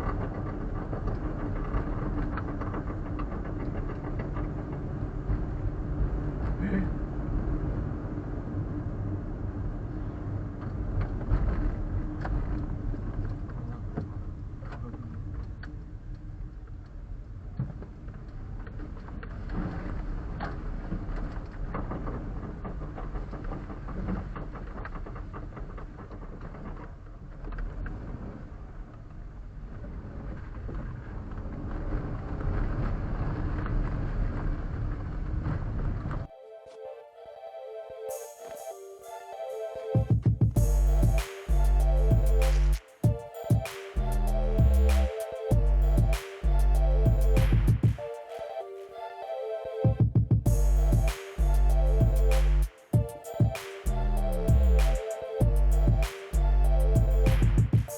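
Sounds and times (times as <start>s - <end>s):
small truck engine droning: 44.0s - 47.7s.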